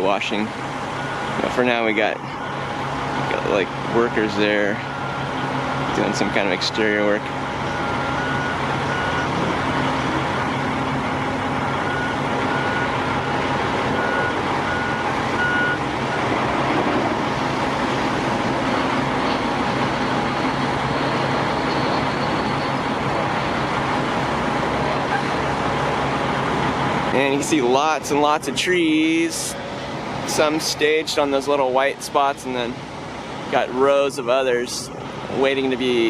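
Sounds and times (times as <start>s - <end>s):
heavy vehicle engine running: 0.0s - 36.0s
reversing alarm beeping: 0.9s - 1.3s, 4.8s - 6.4s, 7.7s - 9.4s, 11.6s - 13.3s, 14.0s - 16.3s.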